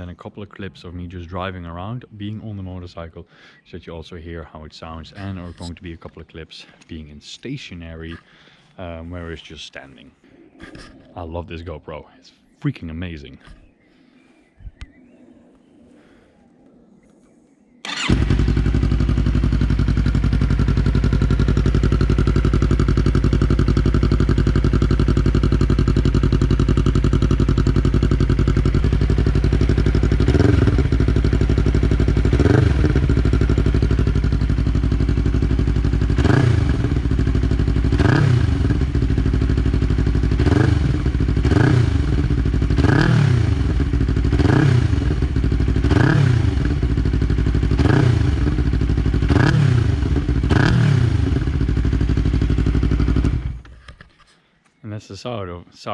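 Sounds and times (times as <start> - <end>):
motorcycle engine revving: 17.8 - 53.8.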